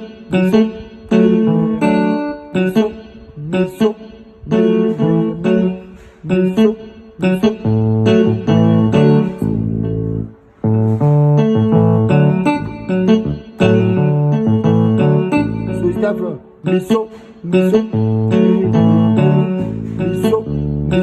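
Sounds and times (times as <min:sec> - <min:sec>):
keyboard bass line: 0:00.0 - 0:21.0
keyboard playing rhythmic chords: 0:00.0 - 0:21.0.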